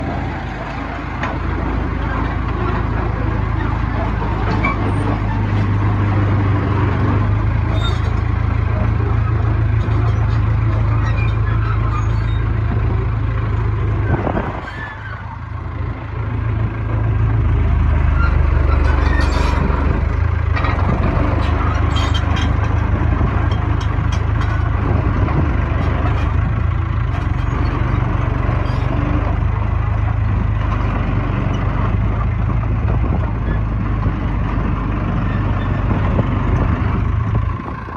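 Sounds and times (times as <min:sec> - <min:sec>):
diesel engine humming: 0:00.0 - 0:37.9.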